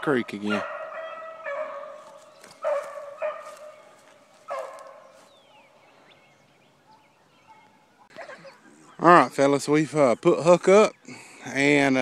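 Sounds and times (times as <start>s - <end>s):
hounds baying: 0.2s - 5.8s.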